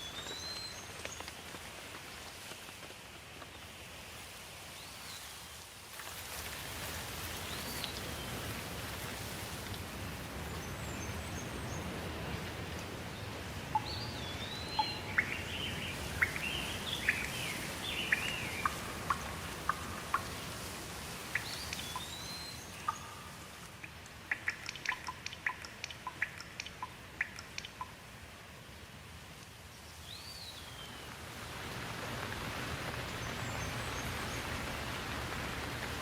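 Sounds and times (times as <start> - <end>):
steady rain falling: 0.0 - 36.0
water drops dripping: 13.7 - 17.4, 18.0 - 20.6, 21.3 - 28.1.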